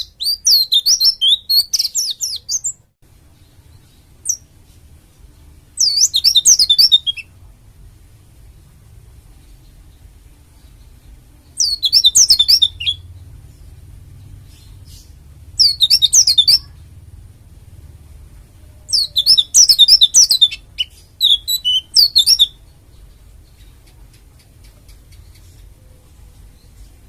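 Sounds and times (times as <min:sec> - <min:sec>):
bird twittering: 0:00.0 - 0:02.8, 0:05.8 - 0:07.3, 0:11.5 - 0:16.9, 0:18.8 - 0:26.0.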